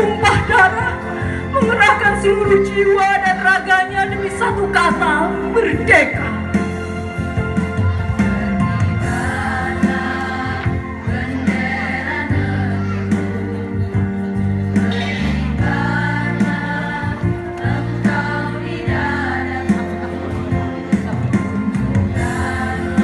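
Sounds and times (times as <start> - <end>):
instrumental backing with bass notes: 0.0 - 23.0
women's choir singing: 9.0 - 13.5, 15.2 - 20.5, 22.1 - 23.0.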